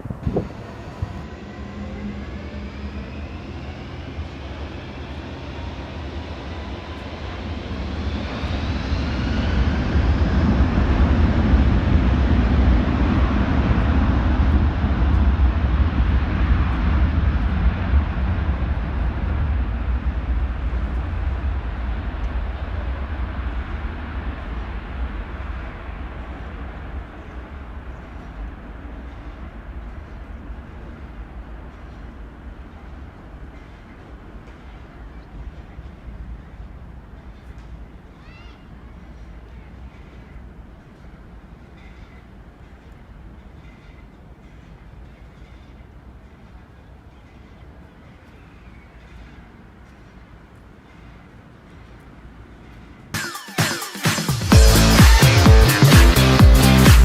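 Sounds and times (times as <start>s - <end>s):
jet engines spooling up: 0.0s - 31.2s, 53.1s - 57.0s.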